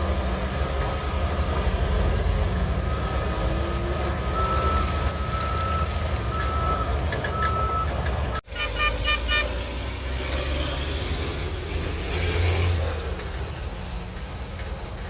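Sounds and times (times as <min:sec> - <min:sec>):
diesel engine running: 0:00.0 - 0:15.0
back-up alarm beeping: 0:02.8 - 0:09.2.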